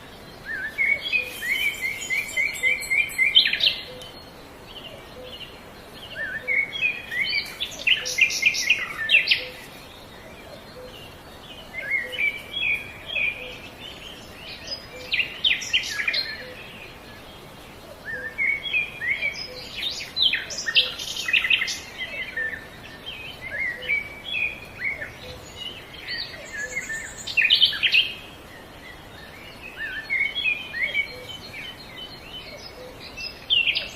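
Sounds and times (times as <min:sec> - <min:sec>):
bird chirping and trilling: 0:00.5 - 0:04.3.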